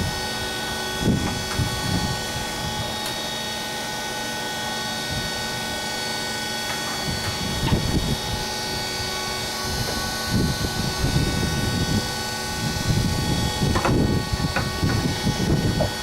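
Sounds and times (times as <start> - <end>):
grinding rumble of cutting stone: 6.0 - 16.0
diamond saw whining: 7.7 - 16.0.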